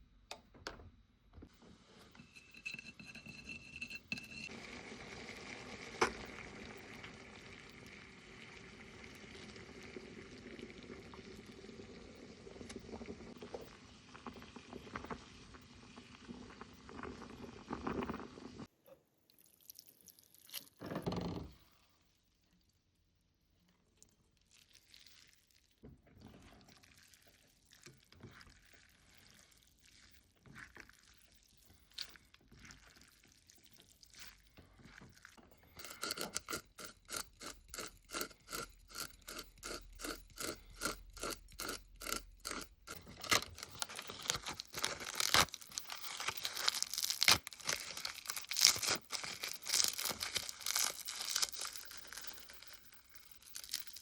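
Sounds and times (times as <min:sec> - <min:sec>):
scraping and clatter: 0:01.9 - 0:04.6
small handling noises: 0:33.6 - 0:54.0.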